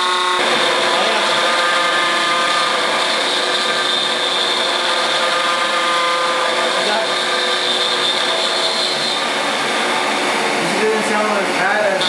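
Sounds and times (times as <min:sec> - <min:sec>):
metal cutting noise: 0:00.0 - 0:12.0
milling machine whine: 0:00.0 - 0:12.0.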